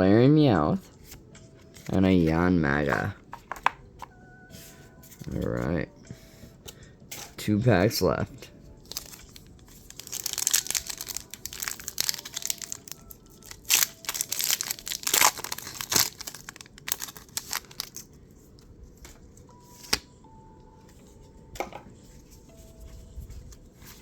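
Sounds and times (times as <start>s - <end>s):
foil wrapper tearing and crinkling: 8.8s - 18.1s.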